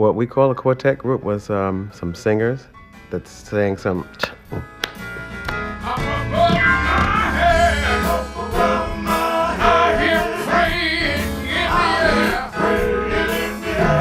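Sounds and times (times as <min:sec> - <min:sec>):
guitar: 0:00.2 - 0:14.0
bass line: 0:04.5 - 0:14.0
voices singing gospel song: 0:05.8 - 0:14.0.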